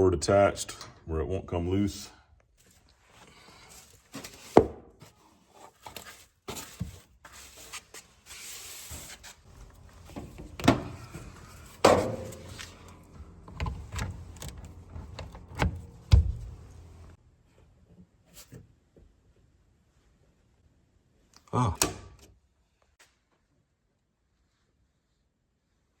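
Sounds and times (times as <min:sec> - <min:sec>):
knocks and clicks of hardware: 0:13.5 - 0:16.6.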